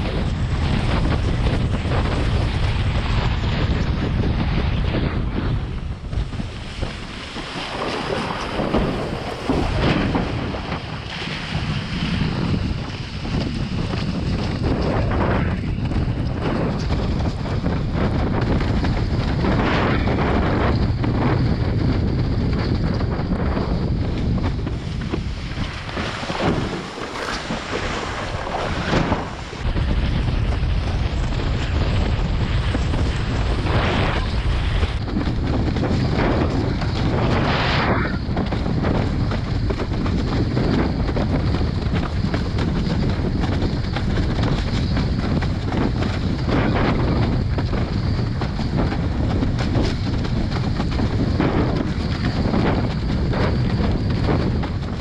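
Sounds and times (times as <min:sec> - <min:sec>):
wind buffeting microphone: 0:00.0 - 0:55.0
rushing water: 0:06.2 - 0:13.9, 0:25.0 - 0:29.7
water splashes: 0:06.4 - 0:13.3, 0:25.1 - 0:29.6.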